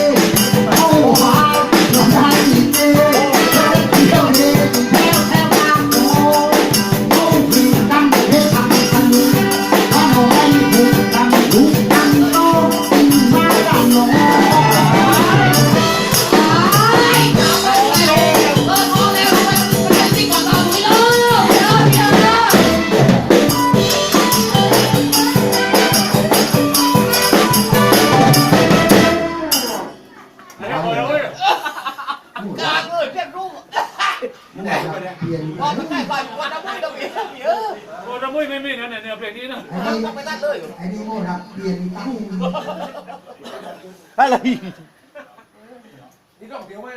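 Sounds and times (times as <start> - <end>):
person singing: 0.0 - 29.9
drums: 0.0 - 30.6.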